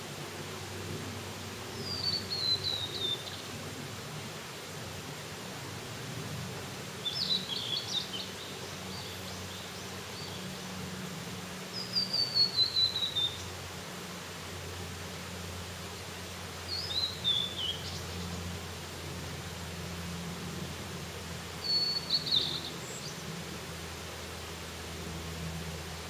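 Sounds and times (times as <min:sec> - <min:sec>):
songbird singing: 0:01.7 - 0:03.5, 0:07.0 - 0:10.8, 0:11.6 - 0:13.6, 0:16.0 - 0:18.8, 0:21.4 - 0:24.1.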